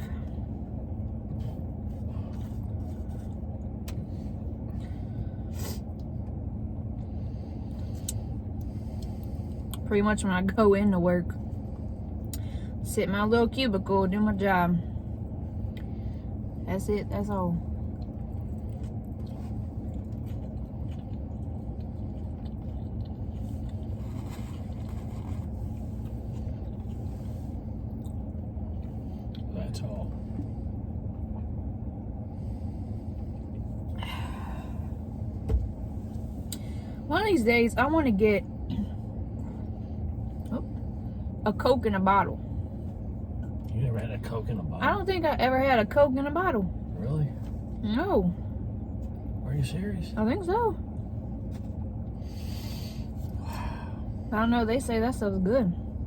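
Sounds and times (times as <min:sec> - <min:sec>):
car engine idling: 0:00.0 - 0:56.0
steady low rumble: 0:00.0 - 0:56.0
faint eating clicks: 0:18.0 - 0:23.9.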